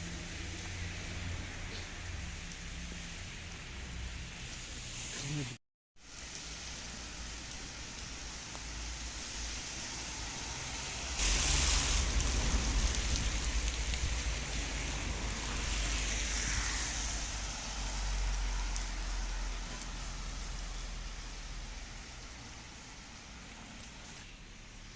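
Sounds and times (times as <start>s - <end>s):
heavy rain falling: 0.0s - 24.9s.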